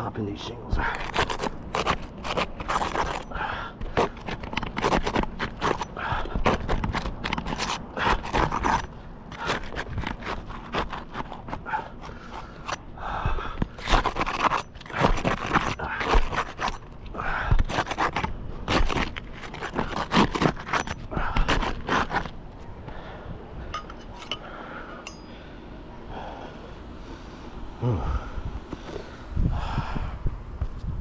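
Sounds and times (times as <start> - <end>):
metal tool scraping shingles: 0.8 - 12.8, 13.7 - 17.0, 17.6 - 22.4, 23.8 - 25.3.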